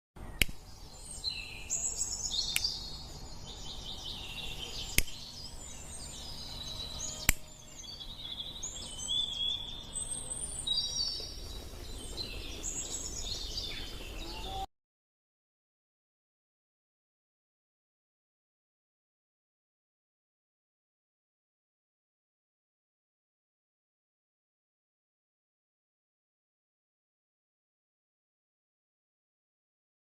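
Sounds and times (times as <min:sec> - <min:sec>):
songbirds chirping: 0:00.2 - 0:14.7.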